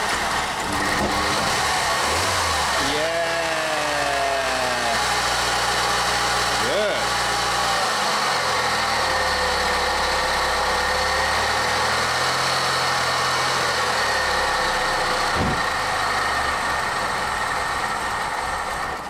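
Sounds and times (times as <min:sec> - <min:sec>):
car engine running unevenly: 0:00.0 - 0:19.0
brief thump: 0:15.3 - 0:15.7.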